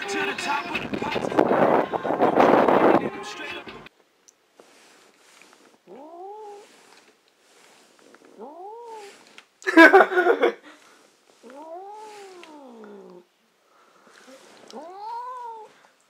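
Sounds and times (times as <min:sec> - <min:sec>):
cat meowing: 0:05.9 - 0:06.8, 0:08.4 - 0:09.2, 0:11.4 - 0:13.3, 0:14.7 - 0:15.8.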